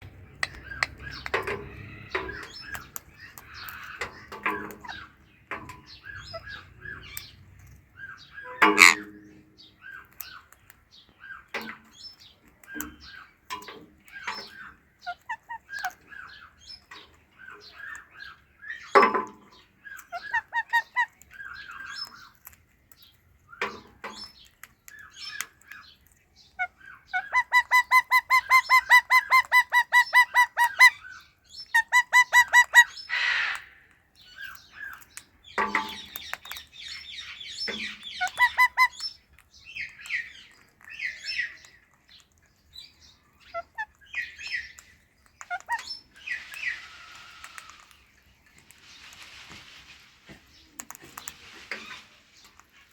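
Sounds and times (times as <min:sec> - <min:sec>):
parrots chirping and calling: 0:00.0 - 0:49.5
harsh parrot squawks: 0:31.8 - 0:33.8.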